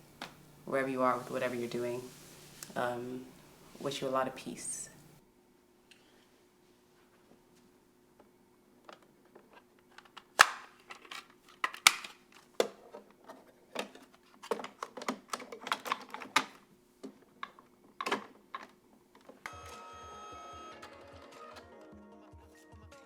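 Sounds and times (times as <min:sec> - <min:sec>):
music: 0:19.5 - 0:23.0.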